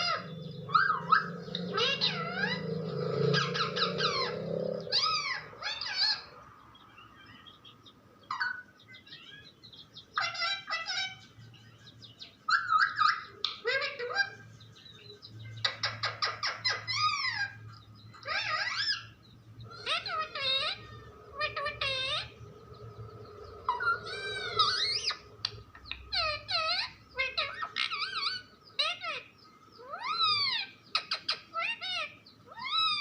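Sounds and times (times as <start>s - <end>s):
parrot squawking and whistling: 0.0s - 6.3s, 12.5s - 14.4s, 15.6s - 19.2s, 19.8s - 22.4s, 23.7s - 33.0s
low steady hum: 9.4s - 30.6s.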